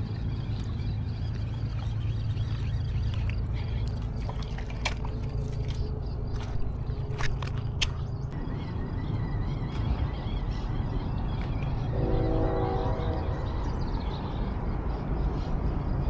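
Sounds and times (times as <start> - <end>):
water splashing and trickling: 0.0 - 8.4
steady low rumble: 0.0 - 16.0.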